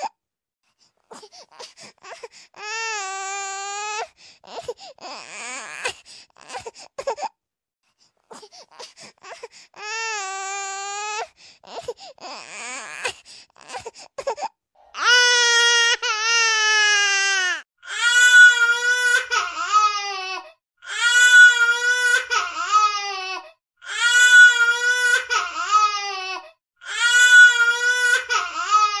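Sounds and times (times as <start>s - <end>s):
cartoon girl crying: 15.0s - 18.1s.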